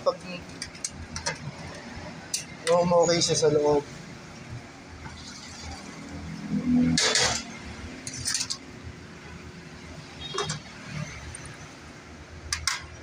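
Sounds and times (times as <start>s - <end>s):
metal parts and tools clinking: 7.0s - 8.6s.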